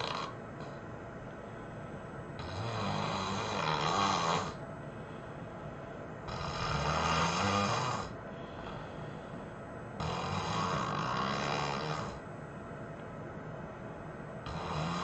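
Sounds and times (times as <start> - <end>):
person snoring heavily: 0.0 - 0.4, 2.4 - 4.6, 6.3 - 8.2, 10.0 - 12.2, 14.5 - 15.0
quiet breathing: 0.6 - 12.4.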